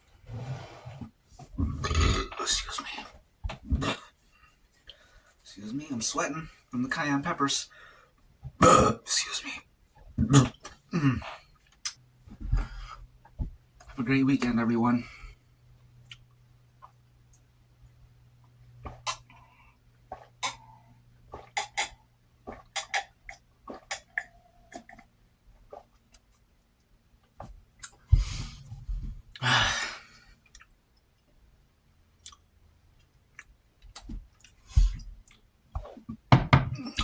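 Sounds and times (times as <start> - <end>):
lip smacks and tongue clicks: 18.9 - 19.4, 21.4 - 25.1, 27.8 - 28.1, 30.4 - 30.8, 32.2 - 34.6.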